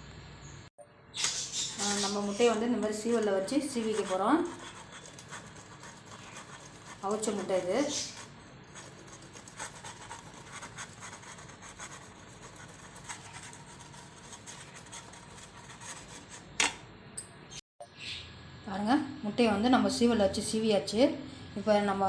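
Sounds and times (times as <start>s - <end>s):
egg rasping on a grater: 1.2s - 16.6s.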